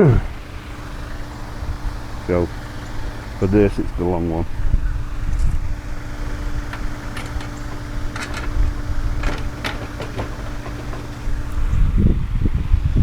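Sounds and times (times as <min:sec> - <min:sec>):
low engine-like hum: 0:00.0 - 0:13.0
metal bolts clinking: 0:05.9 - 0:11.7.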